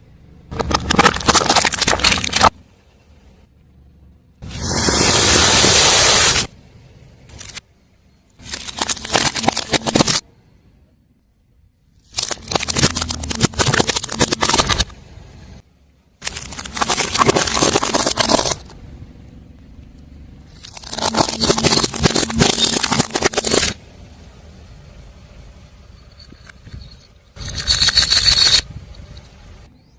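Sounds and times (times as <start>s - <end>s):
car tyre crushing crunchy objects: 0.5s - 2.6s, 8.4s - 10.3s, 12.0s - 15.0s, 16.2s - 18.9s, 20.4s - 23.8s.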